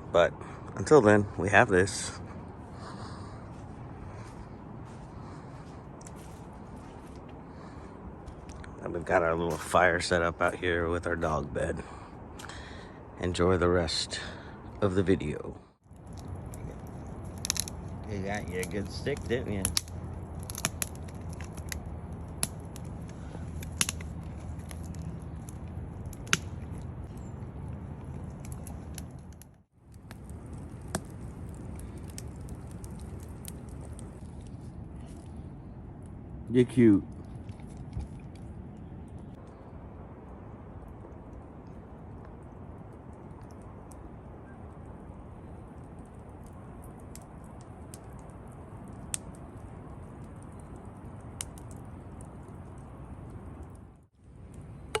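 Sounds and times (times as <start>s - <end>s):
steady low rumble: 0.0s - 55.0s
wood snapping and crackling: 15.8s - 35.4s, 40.8s - 55.0s.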